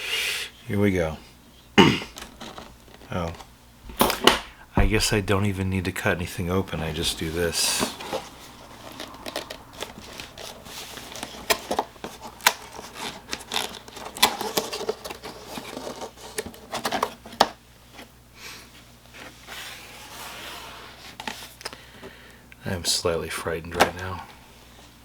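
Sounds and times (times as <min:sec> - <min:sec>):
packaging rustling and crinkling: 0:02.1 - 0:04.3, 0:06.4 - 0:18.1.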